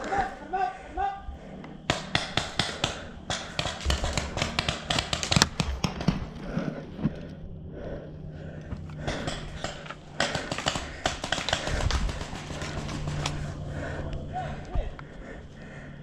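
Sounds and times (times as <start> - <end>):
quick running footsteps: 9.0 - 13.4.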